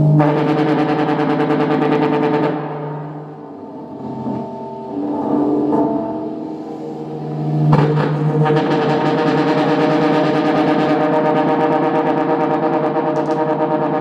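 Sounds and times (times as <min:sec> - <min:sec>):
electric guitar feedback drone: 0:00.0 - 0:14.0.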